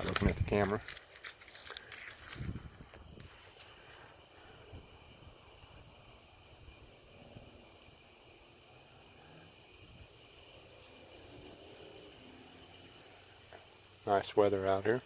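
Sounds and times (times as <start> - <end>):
wind rumble on microphone: 0.0 - 0.8, 2.2 - 3.4
night insects trilling: 0.0 - 15.0.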